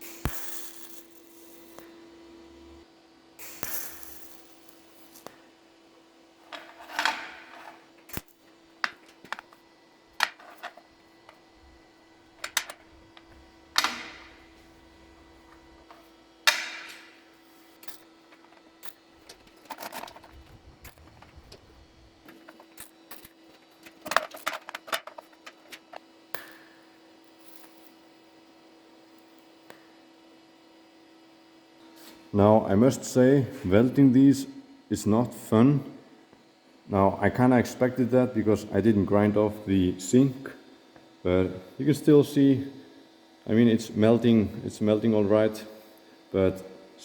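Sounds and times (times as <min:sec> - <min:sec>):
faint steady hum: 0:00.0 - 0:47.0
metal parts clinking on workbench: 0:12.4 - 0:12.8, 0:17.8 - 0:20.3.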